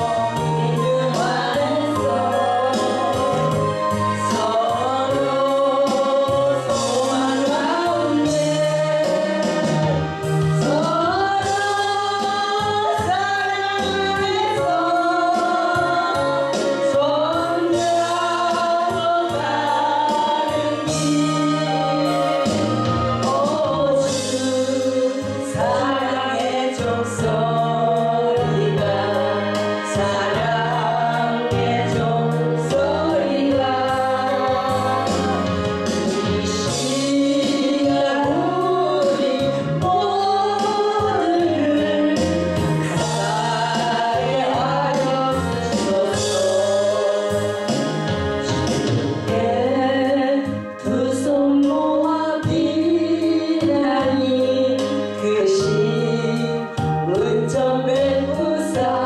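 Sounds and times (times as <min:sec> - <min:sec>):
instrumental accompaniment: 0:00.0 - 0:59.0
voices singing slow melody: 0:00.0 - 0:59.0
bass line: 0:15.8 - 0:51.6.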